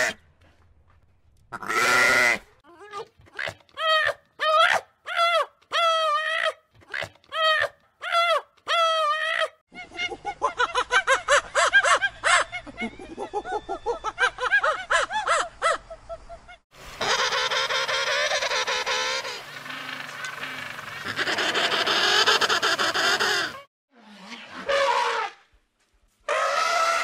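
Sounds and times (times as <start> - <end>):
rapid chattering bird calls: 17.2 - 23.6.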